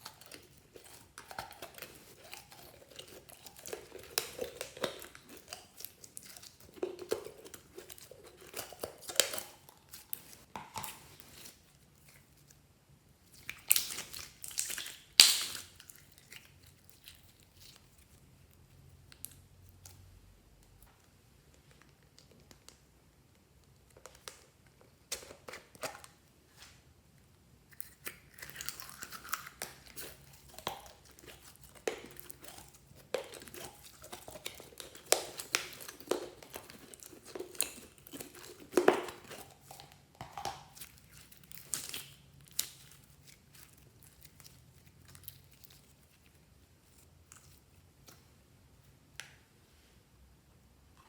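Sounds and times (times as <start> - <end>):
slime crackling and popping: 0.0 - 12.2, 13.3 - 18.2, 27.7 - 48.2.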